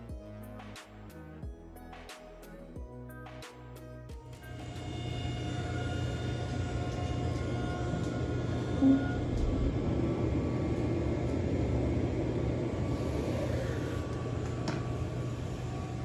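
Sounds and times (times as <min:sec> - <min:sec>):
short loud tone: 0:05.4 - 0:09.7.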